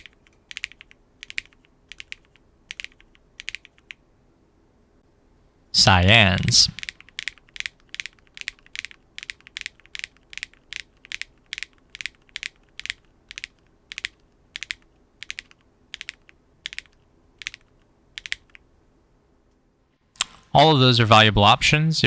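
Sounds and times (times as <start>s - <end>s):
mechanical keyboard typing: 0.0s - 4.0s, 6.8s - 18.6s.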